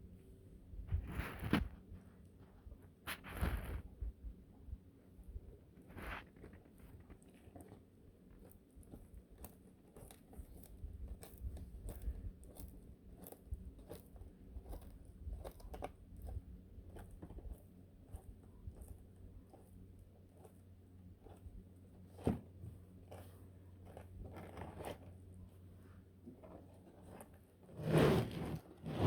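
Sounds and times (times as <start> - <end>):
iguana crunching leaf: 8.3 - 18.2.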